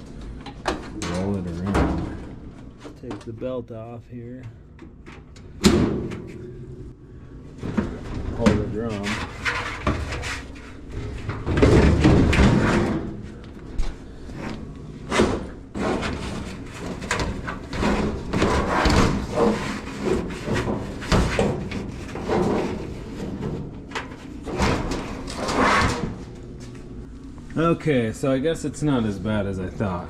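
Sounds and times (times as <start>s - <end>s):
sheet metal scraping: 8.0s - 13.2s, 14.4s - 26.3s.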